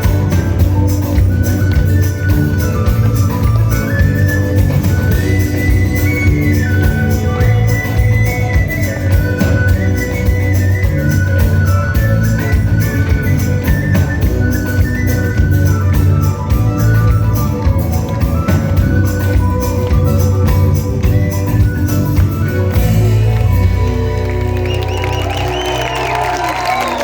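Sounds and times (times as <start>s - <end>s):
organ-like melody: 0.0s - 26.5s.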